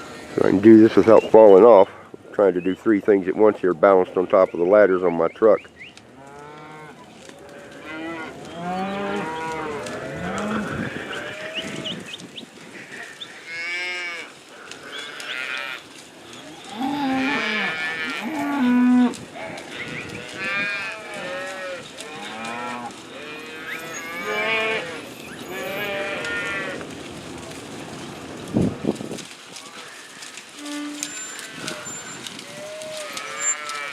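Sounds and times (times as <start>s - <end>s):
cattle mooing: 6.1s - 12.0s, 13.4s - 26.8s, 30.6s - 33.9s.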